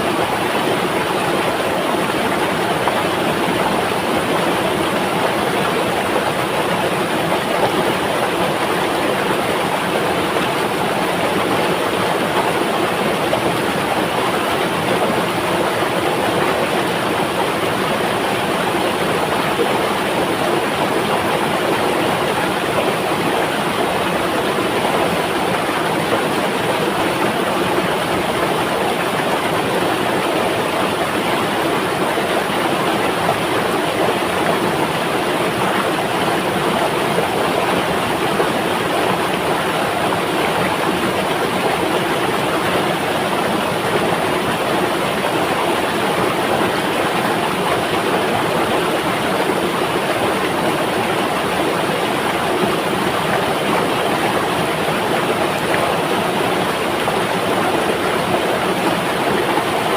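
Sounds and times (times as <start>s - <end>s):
river water flowing: 0.0s - 59.9s.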